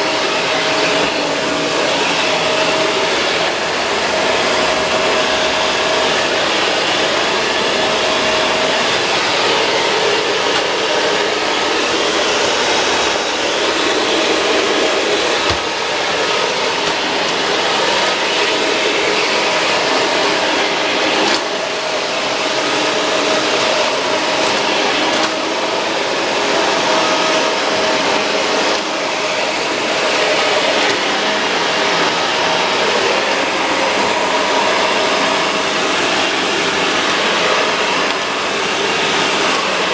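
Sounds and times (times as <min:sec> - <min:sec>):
vacuum cleaner running: 0:00.0 - 0:39.9.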